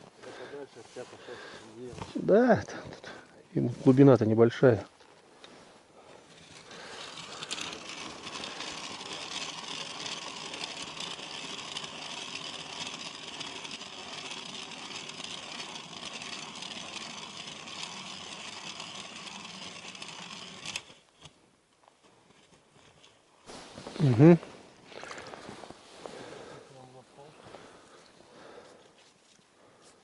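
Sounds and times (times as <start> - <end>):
ice auger boring through ice: 5.5 - 21.4.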